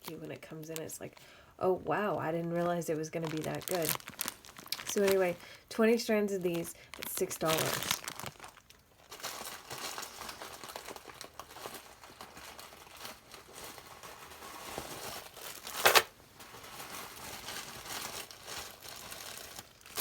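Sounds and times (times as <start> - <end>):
plastic bags crinkling: 2.4 - 20.0
loud plastic crackle: 3.1 - 5.7, 6.4 - 20.0.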